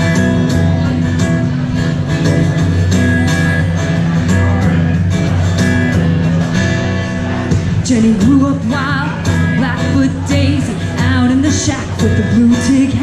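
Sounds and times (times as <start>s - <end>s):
electric guitar playing: 0.0s - 13.0s
person singing: 7.8s - 13.0s.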